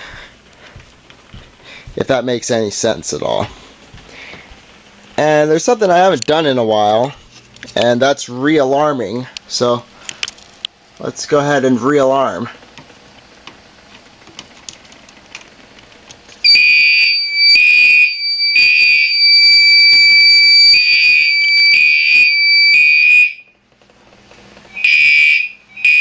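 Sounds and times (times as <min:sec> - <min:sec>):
fire alarm horn blasts: 0:16.4 - 0:23.6, 0:24.7 - 0:26.0.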